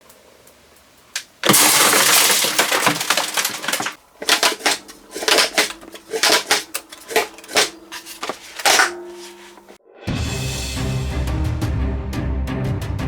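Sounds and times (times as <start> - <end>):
packaging click: 1.2 - 9.8
packaging crinkling: 1.2 - 9.8.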